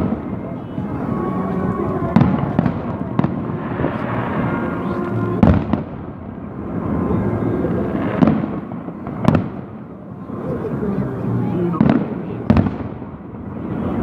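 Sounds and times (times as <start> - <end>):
fireworks bursts: 0.0 - 14.0
sharp firework bangs: 2.1 - 7.1, 7.9 - 9.8, 11.7 - 14.0.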